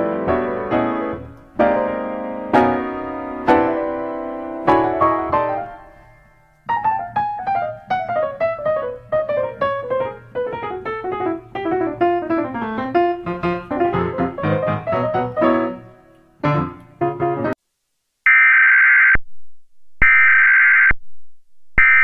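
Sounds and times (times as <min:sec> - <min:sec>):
piano music: 0:00.0 - 0:17.6.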